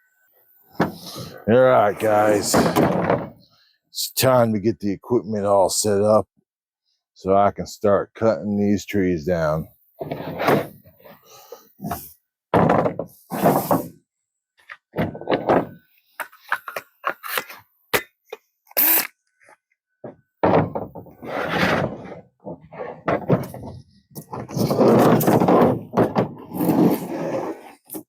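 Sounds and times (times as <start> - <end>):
tools clattering and knocking: 20.0 - 26.5.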